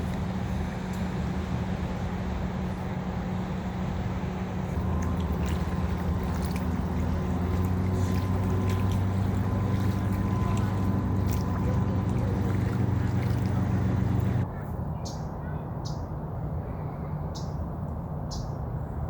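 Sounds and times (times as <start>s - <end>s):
low motor drone: 0.0s - 14.5s
faint high whine: 4.3s - 14.4s.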